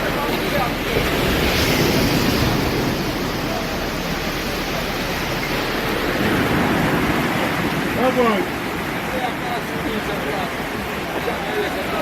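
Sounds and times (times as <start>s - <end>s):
surf rushing on a beach: 0.0s - 12.0s
wind on microphone: 0.8s - 4.7s, 5.7s - 9.1s.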